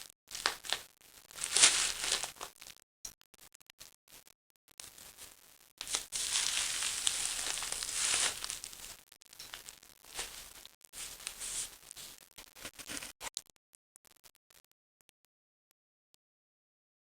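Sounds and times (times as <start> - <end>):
bubble wrap and paper crinkling: 0.0 - 2.7, 4.9 - 13.3.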